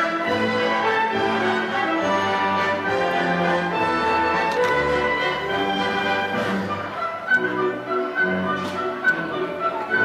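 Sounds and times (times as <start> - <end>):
orchestral strings holding notes: 0.0 - 10.0.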